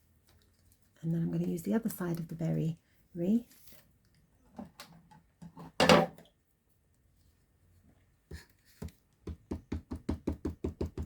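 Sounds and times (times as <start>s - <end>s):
stamping tools knocking on table: 9.3s - 11.0s.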